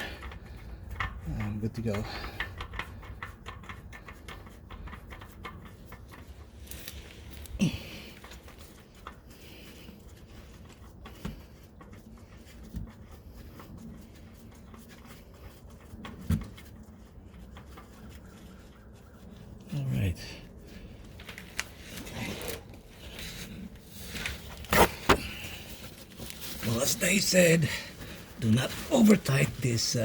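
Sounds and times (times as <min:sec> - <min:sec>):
oil filter threaded by hand: 0:00.0 - 0:19.6.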